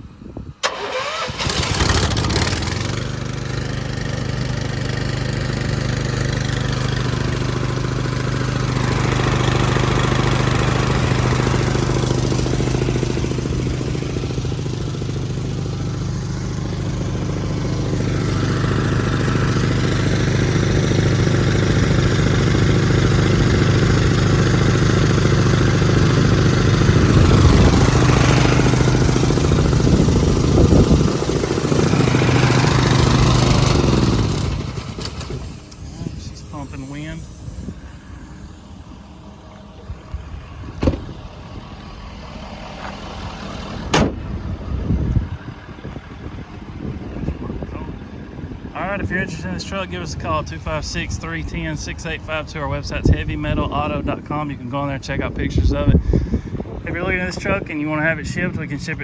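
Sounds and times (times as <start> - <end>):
gasoline engine running: 0.0 - 59.0
air compressor pumping: 21.4 - 38.9.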